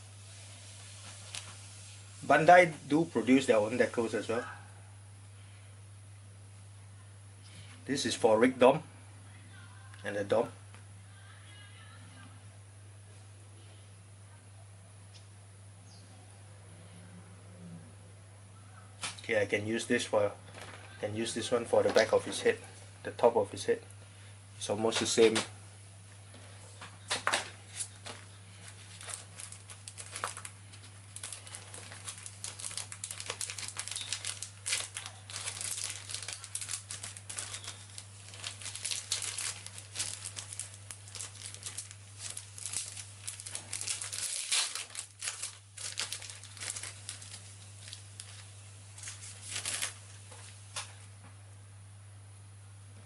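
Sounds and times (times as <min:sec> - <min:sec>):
steady low hum: 0:00.0 - 0:53.0
paper and plastic crinkling: 0:00.5 - 0:04.3, 0:20.5 - 0:22.8, 0:26.3 - 0:51.1.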